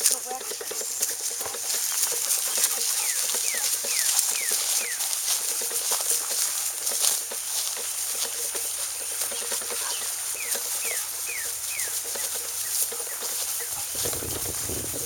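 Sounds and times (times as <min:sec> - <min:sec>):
crackling outdoor noise: 0:00.0 - 0:15.0.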